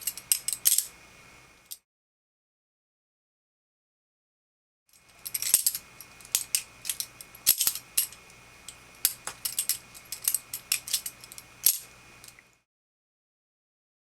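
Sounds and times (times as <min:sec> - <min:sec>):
faint steady hum: 0:00.0 - 0:01.8, 0:04.9 - 0:12.7.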